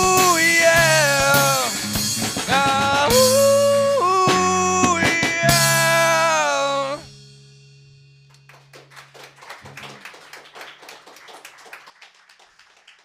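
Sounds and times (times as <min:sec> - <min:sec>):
people clapping: 0:08.3 - 0:13.0.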